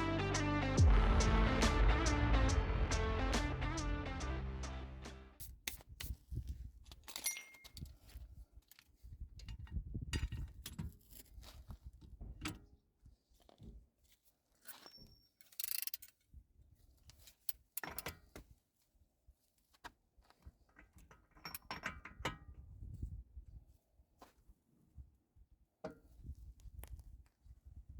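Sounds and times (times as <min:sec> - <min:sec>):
hand tools and metal parts clinking: 0:06.8 - 0:11.6, 0:14.6 - 0:16.2, 0:17.1 - 0:18.4, 0:20.8 - 0:22.2.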